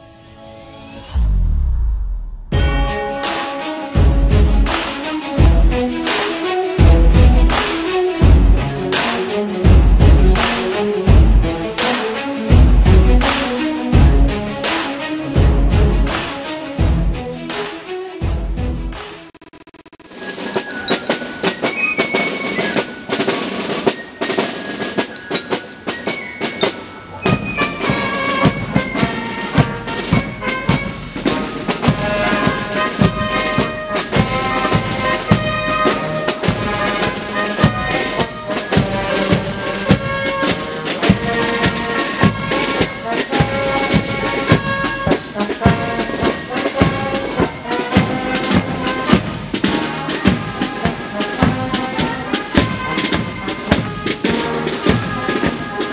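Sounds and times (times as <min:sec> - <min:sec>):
marching band playing: 0:02.5 - 0:19.3, 0:20.0 - 0:55.9
bass drum beat: 0:04.0 - 0:04.8, 0:05.4 - 0:05.9, 0:06.8 - 0:08.8, 0:09.7 - 0:11.7, 0:12.5 - 0:13.4, 0:14.0 - 0:14.4, 0:15.4 - 0:17.3.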